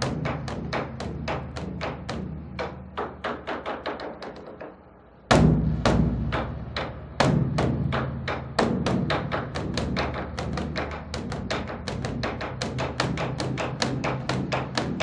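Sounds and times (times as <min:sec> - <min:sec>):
large drum beaten with sticks: 0:00.0 - 0:15.0
heavy drum boom: 0:05.3 - 0:12.0.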